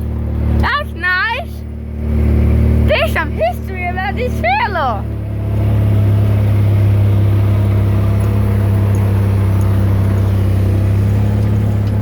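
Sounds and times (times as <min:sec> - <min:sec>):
forklift engine running: 0:00.0 - 0:12.0.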